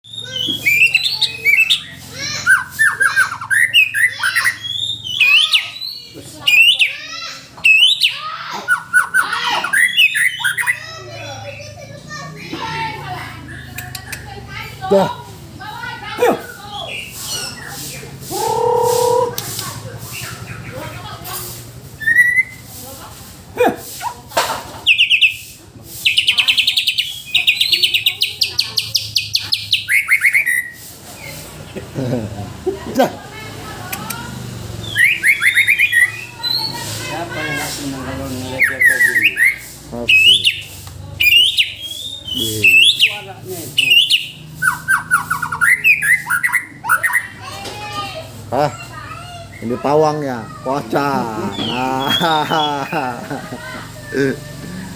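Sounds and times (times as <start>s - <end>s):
parakeet squawking and chirping: 0.0s - 11.9s, 15.7s - 23.0s, 23.8s - 31.7s, 33.6s - 53.1s.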